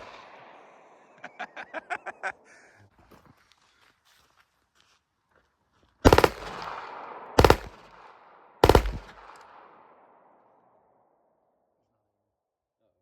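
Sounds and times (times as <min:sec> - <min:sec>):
gunshot echo: 0:00.0 - 0:01.0, 0:06.1 - 0:10.3
rapid rifle fire: 0:06.0 - 0:09.8.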